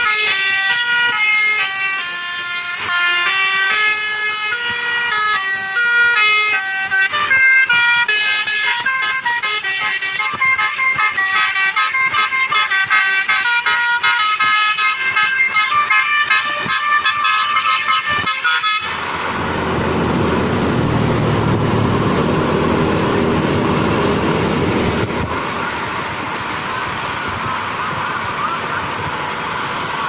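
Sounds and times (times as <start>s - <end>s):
bus horn playing fast melody: 0.0s - 20.2s
steady noisy rumble: 0.0s - 30.0s.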